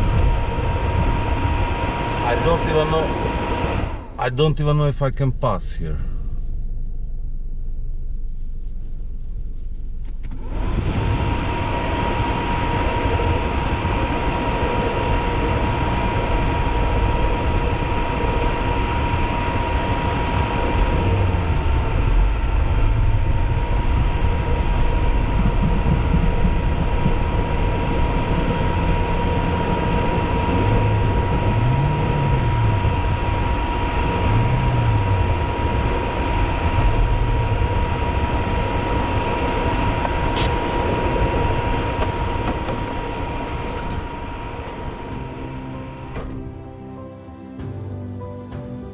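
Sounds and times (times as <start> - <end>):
loud steady rushing noise: 0.0 - 8.2, 10.3 - 48.9
car engine revving: 0.0 - 48.9.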